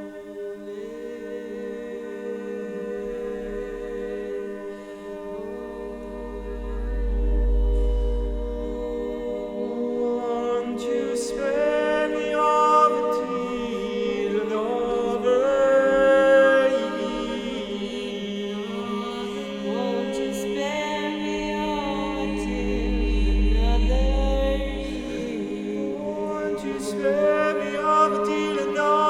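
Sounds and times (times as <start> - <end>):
unaccompanied choir singing: 0.0 - 29.0
low drone: 3.1 - 10.4, 21.1 - 26.4.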